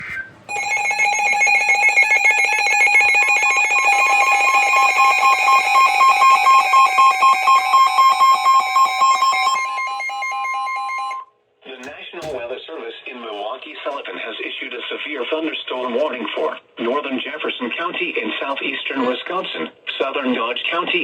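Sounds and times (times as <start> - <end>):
steady high tone: 0.5 - 11.2
pulsing electronic alarm: 0.5 - 11.3.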